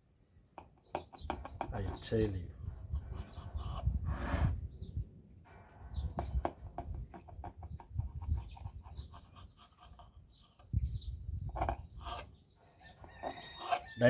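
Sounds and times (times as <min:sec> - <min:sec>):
bird chirping: 0:00.2 - 0:04.0, 0:04.6 - 0:05.0, 0:05.8 - 0:14.0
chickens clucking: 0:11.5 - 0:14.0.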